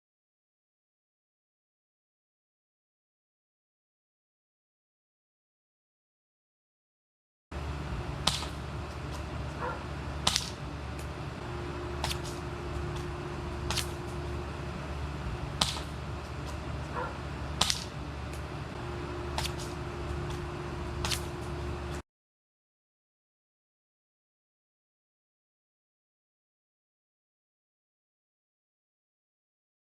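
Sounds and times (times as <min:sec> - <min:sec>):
steady low hum: 0:07.5 - 0:22.0
airsoft rifle shots: 0:08.2 - 0:08.6, 0:10.2 - 0:10.6, 0:12.0 - 0:14.3, 0:15.5 - 0:16.6, 0:17.6 - 0:18.0, 0:19.3 - 0:20.4.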